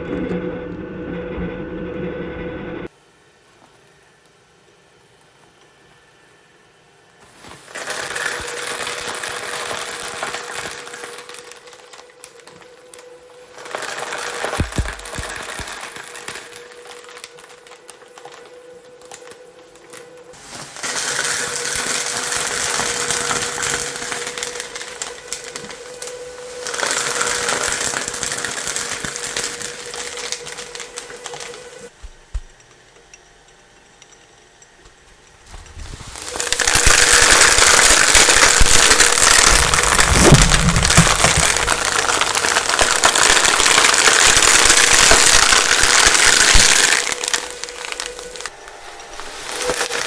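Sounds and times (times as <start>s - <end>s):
industrial shredder motor hum: 7.4s - 32.6s, 34.8s - 50.0s
material crunching and crackling: 13.5s - 18.2s, 20.3s - 32.6s, 34.8s - 50.0s.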